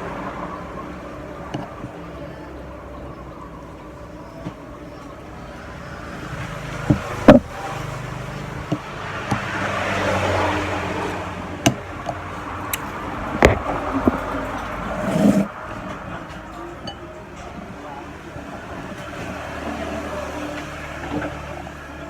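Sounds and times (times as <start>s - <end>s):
vehicle passing: 5.5s - 16.4s.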